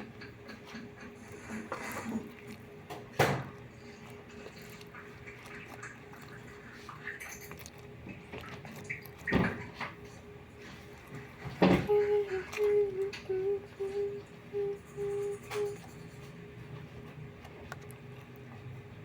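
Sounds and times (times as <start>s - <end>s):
faint steady hum: 0.0s - 19.0s
loud slime squelches: 3.5s - 14.3s.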